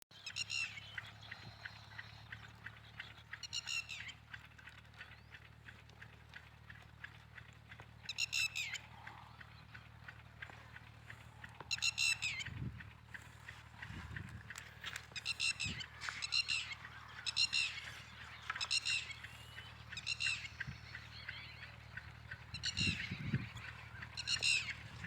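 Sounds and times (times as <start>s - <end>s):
high-pitched animal calls: 8.1s - 9.2s, 11.4s - 12.6s, 14.8s - 25.0s.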